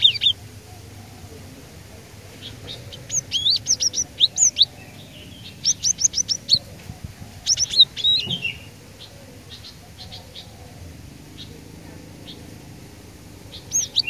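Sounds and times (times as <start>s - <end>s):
bird chirps: 0.0s - 0.4s, 2.4s - 6.7s, 7.4s - 10.5s, 13.5s - 14.0s.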